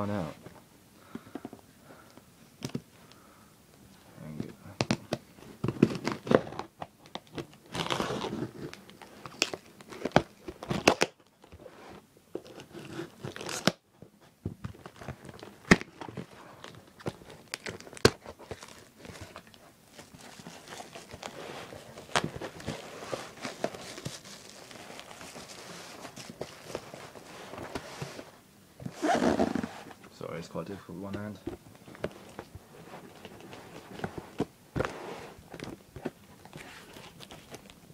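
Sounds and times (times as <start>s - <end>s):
packaging tearing and crinkling: 5.7s - 11.3s, 12.4s - 13.8s, 14.8s - 27.2s.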